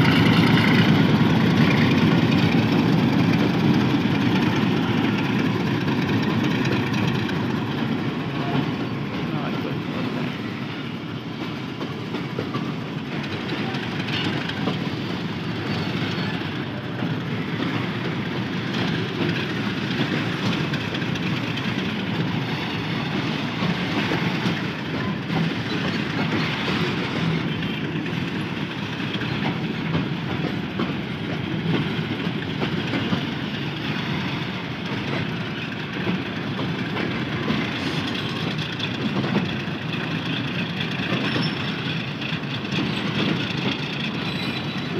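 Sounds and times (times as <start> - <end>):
freight train wheels clattering: 0.0 - 44.9.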